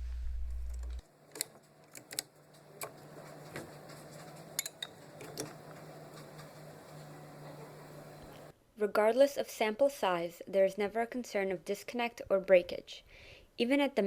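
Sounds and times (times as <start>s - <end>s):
faint steady hum: 0.0s - 8.6s.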